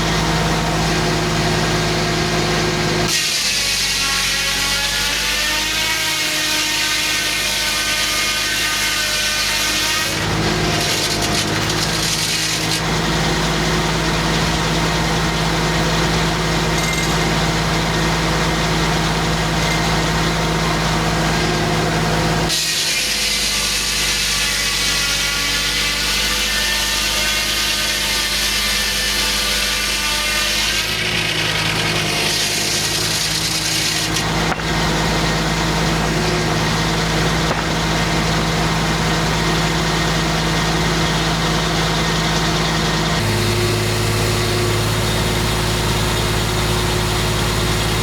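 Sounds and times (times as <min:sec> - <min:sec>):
sawmill machine drone: 0:00.0 - 0:48.0
saw blade ripping through wood: 0:03.0 - 0:13.6, 0:22.5 - 0:38.2.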